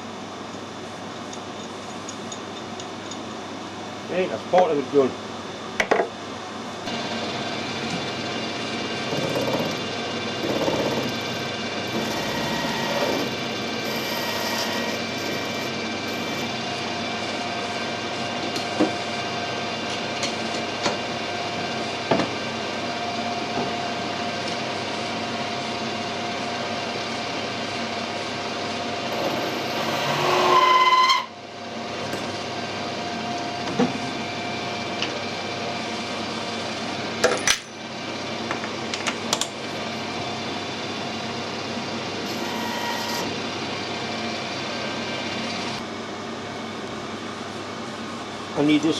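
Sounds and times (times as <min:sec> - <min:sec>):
workshop machine running: 0:00.0 - 0:48.9
high-pitched squeal: 0:29.2 - 0:31.3.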